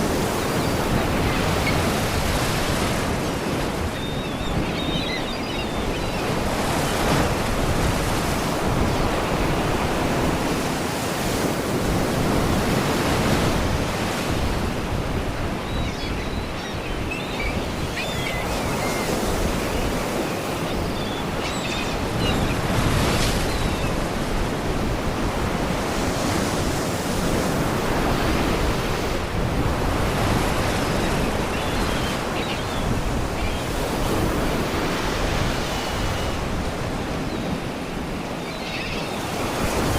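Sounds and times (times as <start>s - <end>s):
sea waves washing against rocks: 4.7s - 15.7s.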